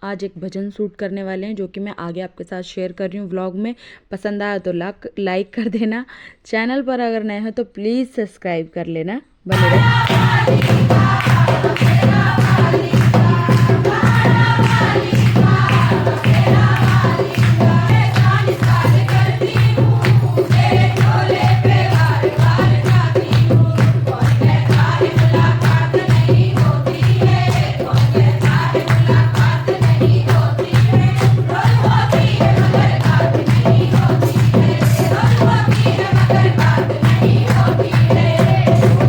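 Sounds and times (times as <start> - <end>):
group singing devotional song: 9.5 - 39.0
rhythmic tambourine-like percussion: 9.5 - 39.0.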